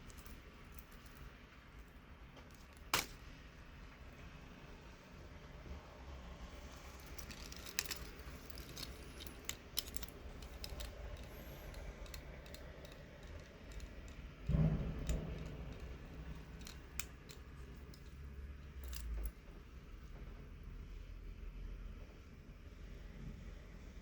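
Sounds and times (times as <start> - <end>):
wristwatch bracelet clinking: 0.0 - 1.3, 6.9 - 19.4.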